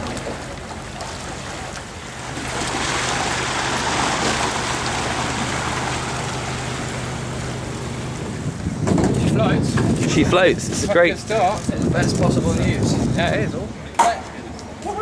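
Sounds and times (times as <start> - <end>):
water rushing: 0.0 - 11.5
low engine hum: 0.0 - 11.9.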